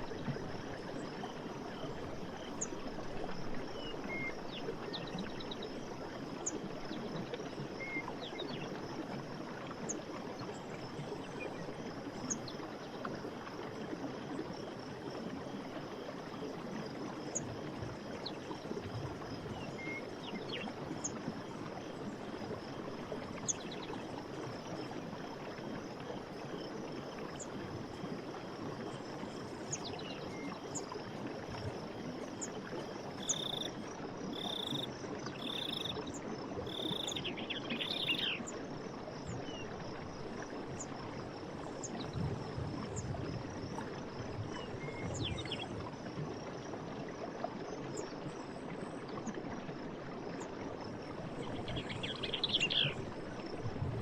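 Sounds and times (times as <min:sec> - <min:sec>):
stream flowing: 0:00.0 - 0:54.0.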